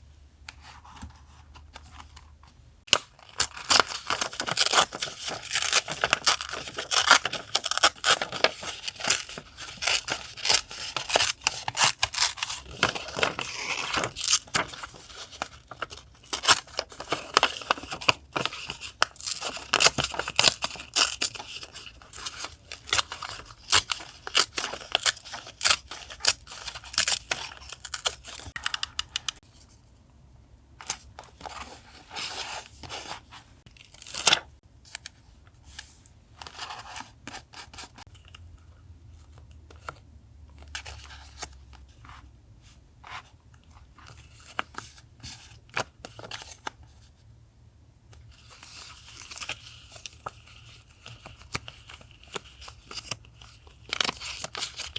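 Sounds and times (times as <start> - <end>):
paper rustling and tearing: 3.2 - 28.6.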